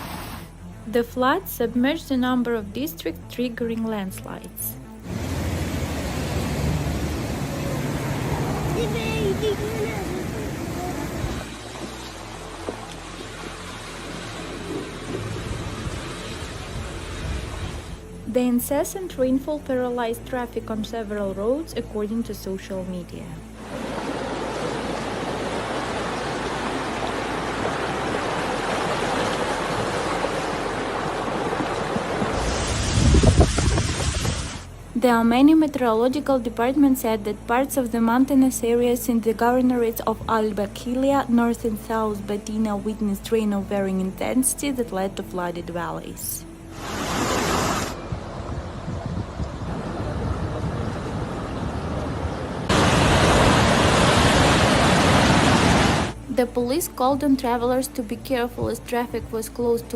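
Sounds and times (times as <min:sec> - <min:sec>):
floodwater rushing: 0:05.0 - 0:18.0, 0:23.5 - 0:34.8, 0:46.6 - 0:56.2
wind on microphone: 0:15.1 - 0:18.0, 0:31.0 - 0:34.6, 0:46.9 - 0:56.1.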